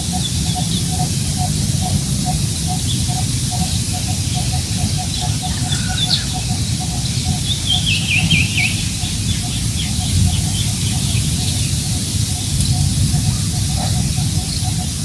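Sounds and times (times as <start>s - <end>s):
wind rumbling on microphone: 0.0s - 15.0s
bird repeating low note: 1.9s - 15.0s
bird high chirps: 2.7s - 14.8s.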